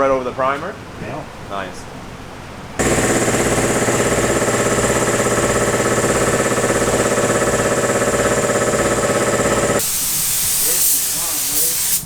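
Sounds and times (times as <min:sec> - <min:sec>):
piston air compressor running: 0:02.8 - 0:12.0.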